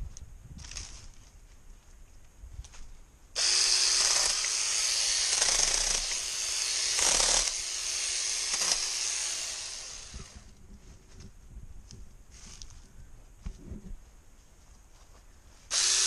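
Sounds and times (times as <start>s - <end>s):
chainsaw motor whine: 3.4s - 10.5s, 15.7s - 16.0s.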